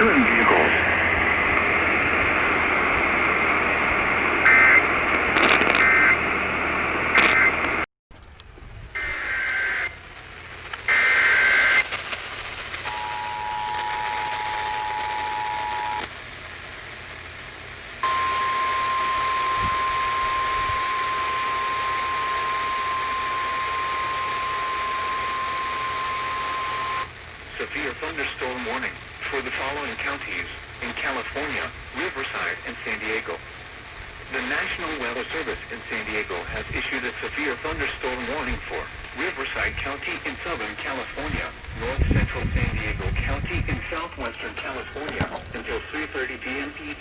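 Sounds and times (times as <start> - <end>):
radio hiss: 0.0 - 47.0
steady single-tone alert: 18.0 - 27.1
two-tone attention signal: 18.0 - 27.1.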